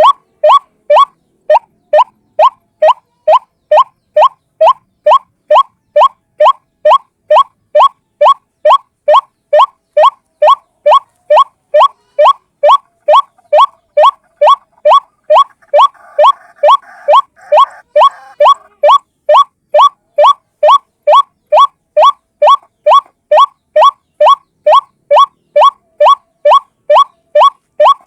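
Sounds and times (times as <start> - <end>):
waterhen calling: 0.0 - 28.0.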